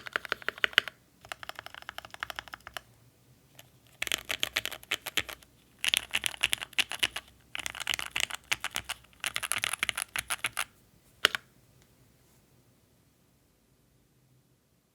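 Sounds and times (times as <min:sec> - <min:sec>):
mechanical keyboard typing: 0:00.0 - 0:02.9, 0:03.9 - 0:11.5.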